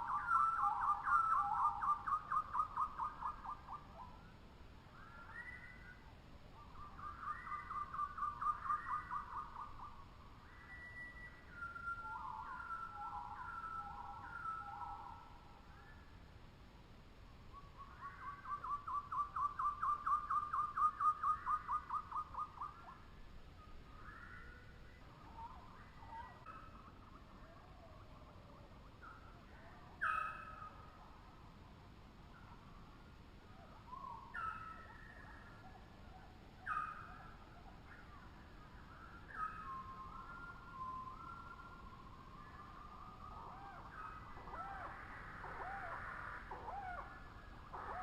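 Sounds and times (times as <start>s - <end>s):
faint bird calls: 0.0s - 16.4s, 17.4s - 48.0s
faint steady hiss: 0.0s - 48.0s
birds calling: 36.6s - 48.0s.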